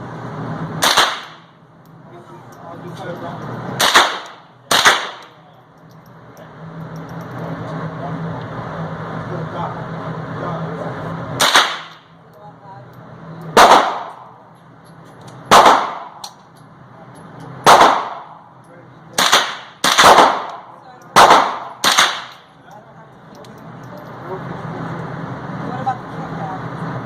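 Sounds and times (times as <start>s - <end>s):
echoing gunshots: 0.8s - 1.5s, 3.8s - 5.3s, 11.4s - 12.0s, 13.6s - 14.3s, 15.5s - 16.2s, 17.6s - 18.4s, 19.2s - 22.4s.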